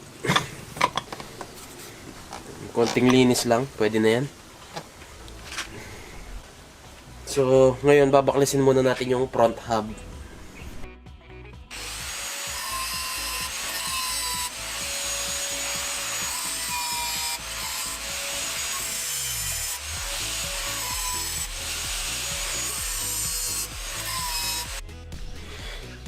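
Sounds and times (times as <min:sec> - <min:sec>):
rasping sawing tool noise: 0:11.7 - 0:24.8.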